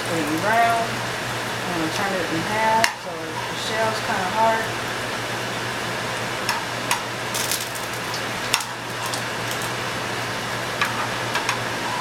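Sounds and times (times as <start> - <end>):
tortilla sizzling in oil: 4.7 - 12.0.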